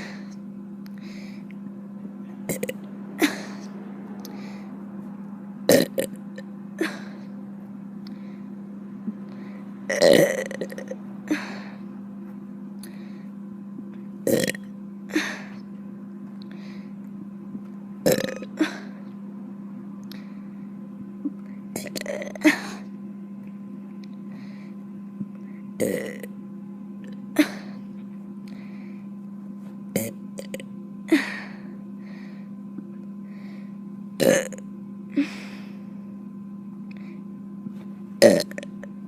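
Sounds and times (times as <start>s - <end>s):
steady low hum: 0.0s - 39.0s
woman burping: 2.5s - 3.7s, 5.7s - 6.2s, 9.9s - 11.7s, 14.3s - 15.5s, 18.0s - 19.0s, 21.8s - 22.9s, 25.8s - 26.3s, 30.0s - 31.4s, 34.2s - 34.6s, 38.2s - 38.8s.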